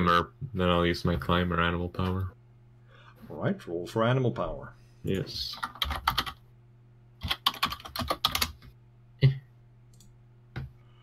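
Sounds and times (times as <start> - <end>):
low electrical hum: 0.0 - 11.0
computer keyboard typing: 5.5 - 6.4, 7.2 - 8.7.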